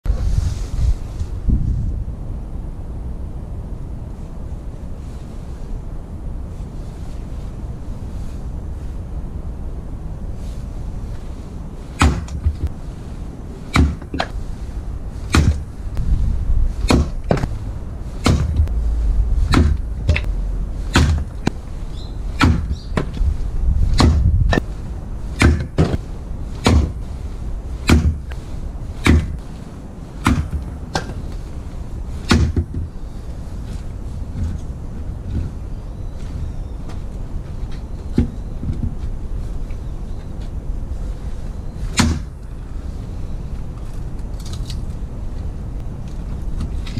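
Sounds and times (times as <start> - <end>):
axe chopping firewood: 12.0 - 12.5, 13.7 - 14.3, 15.3 - 15.6, 16.8 - 17.5, 18.2 - 18.7, 20.9 - 21.3, 22.4 - 23.1, 24.0 - 24.3, 25.4 - 26.0, 26.6 - 27.0, 27.8 - 28.2, 29.0 - 29.4, 30.2 - 31.1, 32.3 - 32.8, 41.9 - 42.3.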